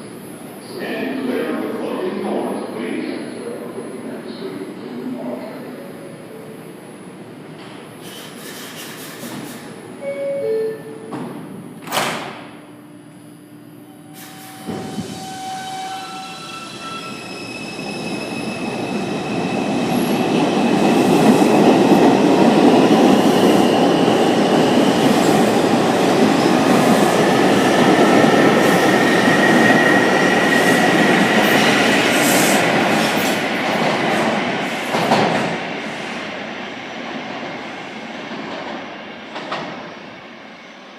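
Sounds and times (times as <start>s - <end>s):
train wheel and track rumble: 6.6s - 9.9s, 14.2s - 40.6s.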